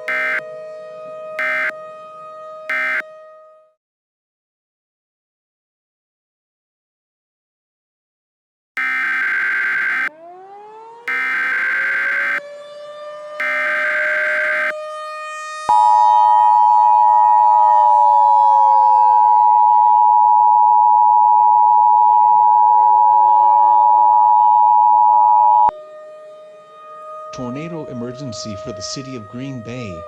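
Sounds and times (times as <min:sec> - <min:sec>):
screeching digital data tones: 0:00.0 - 0:00.4, 0:01.4 - 0:01.7, 0:02.7 - 0:03.0, 0:08.8 - 0:10.1, 0:11.1 - 0:12.4, 0:13.4 - 0:14.7
two-tone attention signal: 0:00.0 - 0:00.4, 0:01.4 - 0:01.7, 0:02.7 - 0:03.0, 0:08.8 - 0:10.1, 0:11.1 - 0:12.4, 0:13.4 - 0:14.7
civil defense siren wailing: 0:00.0 - 0:03.8, 0:08.8 - 0:20.6, 0:22.1 - 0:30.0.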